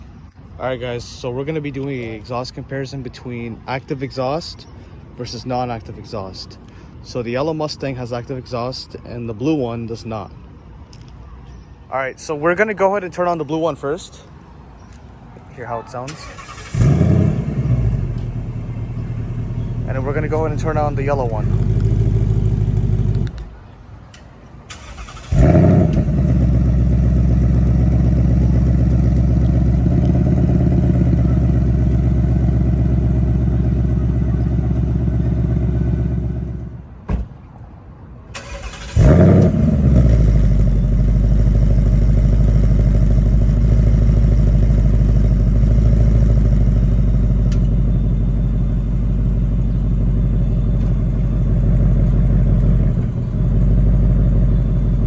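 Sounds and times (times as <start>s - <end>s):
car engine starting and idling: 15.9s - 23.7s, 24.6s - 37.0s, 38.2s - 55.0s.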